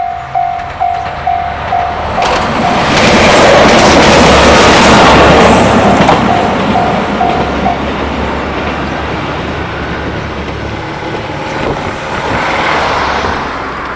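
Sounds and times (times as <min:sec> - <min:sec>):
level-crossing alarm ringing: 0:00.0 - 0:03.1, 0:05.8 - 0:07.9
road vehicle approaching: 0:00.0 - 0:13.9
train rumbling past: 0:00.0 - 0:13.9.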